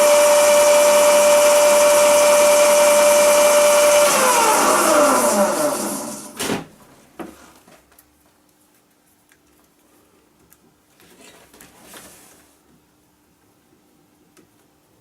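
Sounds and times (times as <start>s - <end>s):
soft rustle: 10.9s - 12.7s.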